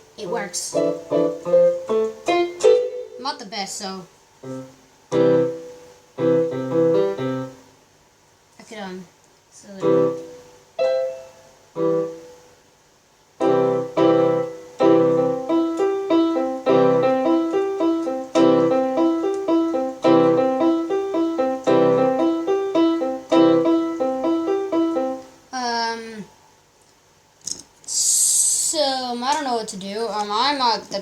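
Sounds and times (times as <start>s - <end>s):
electronic keyboard piano chords: 0.0s - 3.3s, 4.4s - 7.7s, 9.8s - 12.5s, 13.4s - 25.4s.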